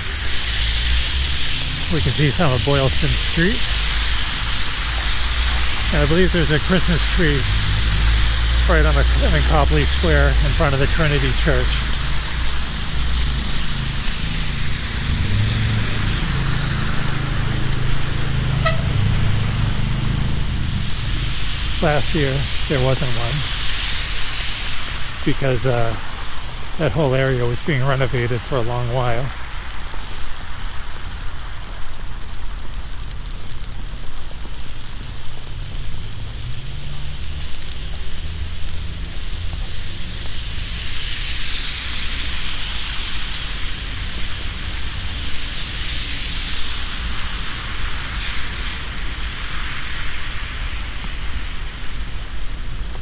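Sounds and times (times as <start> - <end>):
low engine rumble: 0.0 - 53.0
tyres hissing on wet road: 0.0 - 53.0
car horn toot: 18.6 - 19.1.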